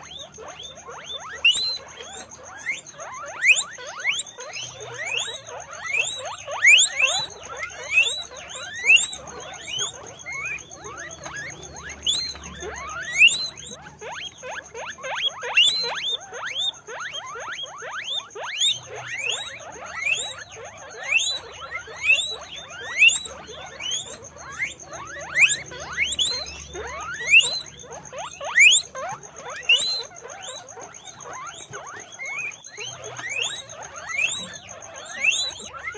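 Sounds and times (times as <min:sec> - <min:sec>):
guinea pigs wheeking: 0:00.0 - 0:35.9.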